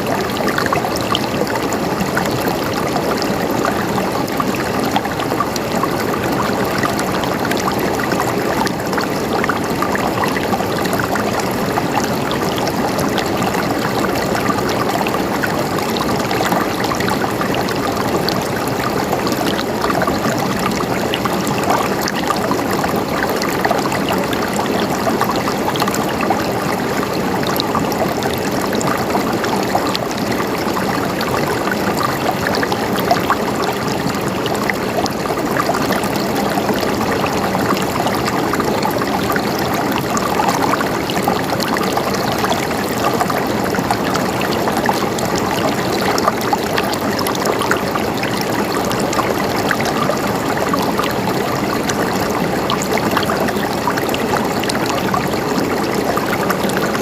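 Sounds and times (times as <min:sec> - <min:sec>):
running water gurgling: 0:00.0 - 0:57.0.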